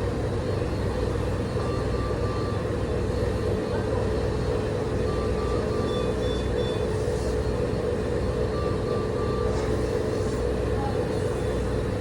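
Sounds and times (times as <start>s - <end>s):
alarm short beeps: 5.0s - 7.0s.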